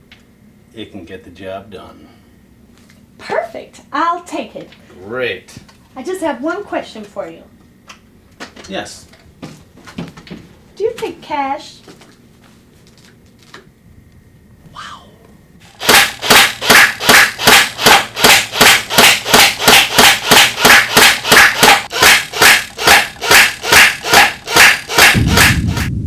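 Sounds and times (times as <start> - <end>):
loud bangs like gunfire: 15.8 - 25.9.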